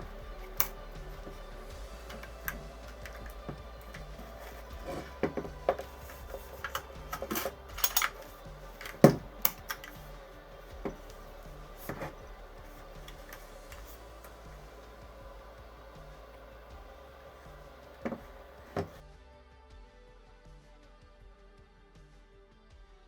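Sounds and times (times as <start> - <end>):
hard objects clicking and knocking: 0.0 - 19.0.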